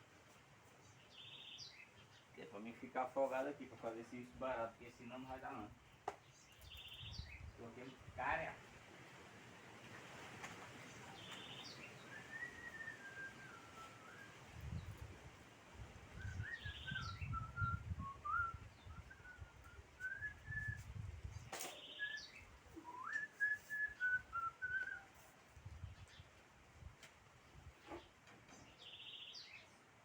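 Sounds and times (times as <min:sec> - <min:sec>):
person whistling a tune: 0:16.3 - 0:21.0, 0:22.8 - 0:25.1.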